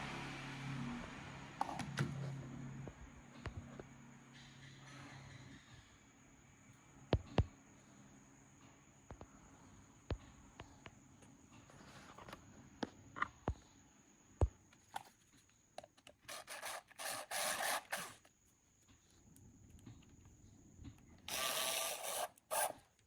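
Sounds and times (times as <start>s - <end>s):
rasping scrape: 16.3s - 18.2s.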